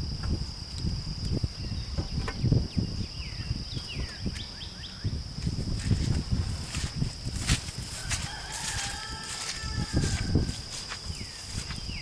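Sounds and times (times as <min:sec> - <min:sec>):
low rumbling thumps: 0:00.0 - 0:04.4
high insect drone: 0:00.0 - 0:12.0.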